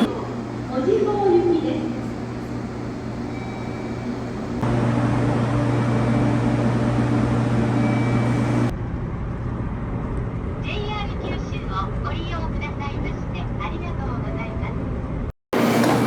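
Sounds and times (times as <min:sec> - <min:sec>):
electric train humming: 0:00.0 - 0:08.7, 0:15.6 - 0:16.0
louder deeper hum with tones: 0:00.0 - 0:09.0.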